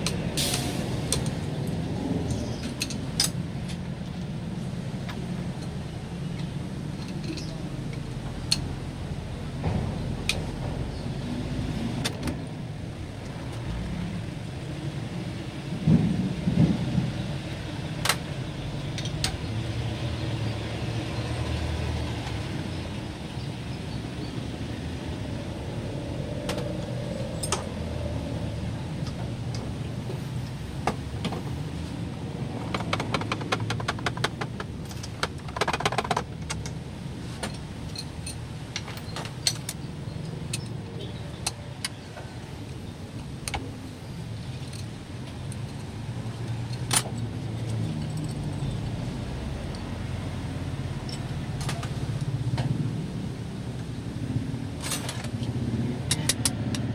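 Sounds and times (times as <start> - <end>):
steady low rumble: 0.0 - 21.4.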